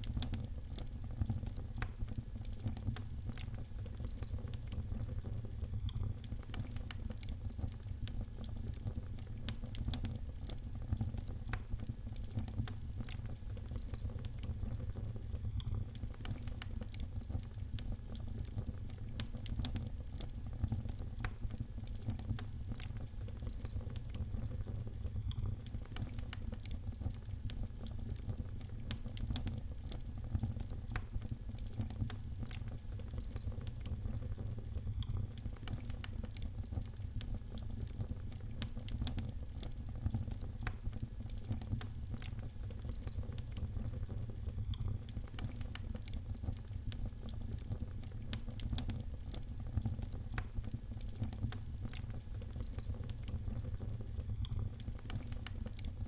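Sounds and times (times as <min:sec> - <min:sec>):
fire crackling and popping: 0:00.0 - 0:56.0
low fire rumble: 0:00.0 - 0:56.0.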